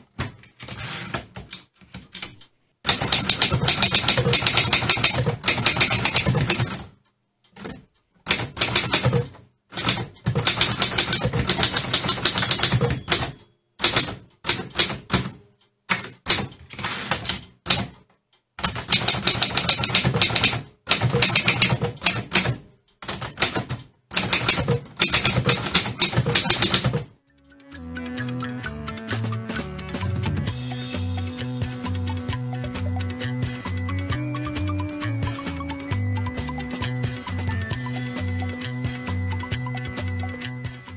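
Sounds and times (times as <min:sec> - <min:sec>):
typewriter key strikes: 0:01.4 - 0:06.9, 0:07.6 - 0:18.0, 0:18.6 - 0:27.2.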